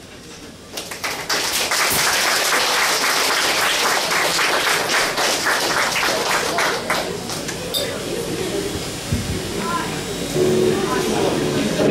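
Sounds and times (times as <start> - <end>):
audience applauding: 0.7 - 7.6.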